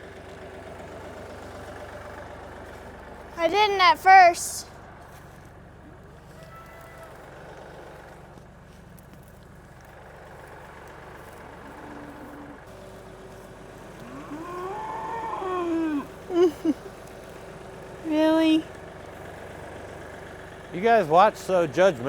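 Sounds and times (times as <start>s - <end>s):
low engine hum: 0.0s - 22.0s
cow mooing: 11.6s - 12.7s, 13.9s - 16.5s.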